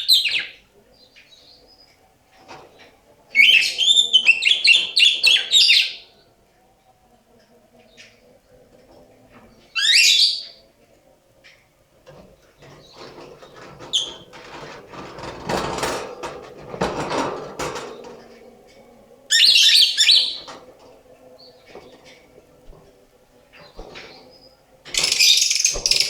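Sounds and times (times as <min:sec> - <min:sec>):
rustling and scratching: 0:02.3 - 0:05.6, 0:10.8 - 0:26.0.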